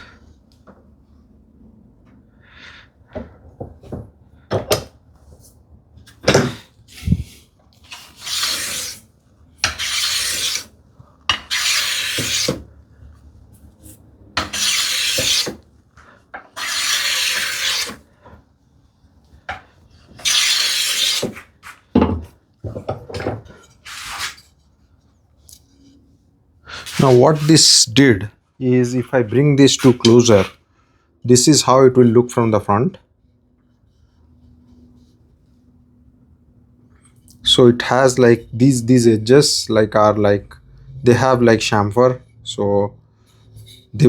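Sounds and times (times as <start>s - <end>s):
hand plane shaving wood: 6.9s - 9.0s, 9.6s - 10.7s, 11.3s - 12.7s, 14.4s - 15.6s, 16.5s - 18.4s, 20.0s - 21.8s.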